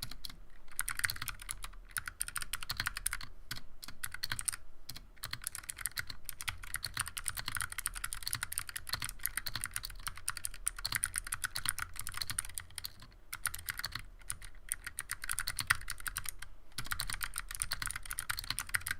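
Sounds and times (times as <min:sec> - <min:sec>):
mechanical keyboard typing clicks: 0:00.0 - 0:18.9.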